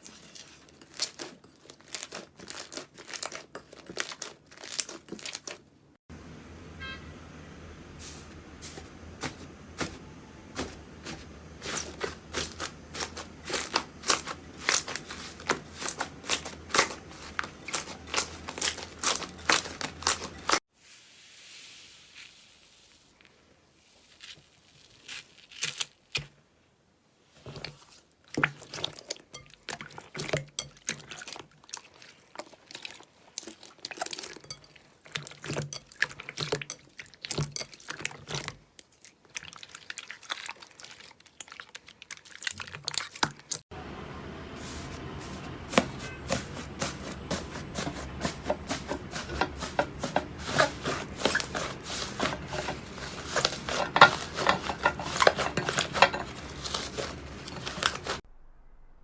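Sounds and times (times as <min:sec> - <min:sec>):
slime squishing with wet pops: 0:00.0 - 0:05.7, 0:27.4 - 0:43.6.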